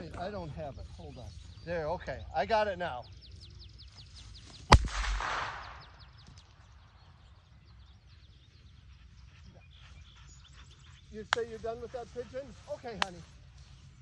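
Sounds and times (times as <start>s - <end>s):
gunshot with echo: 4.7s - 6.1s.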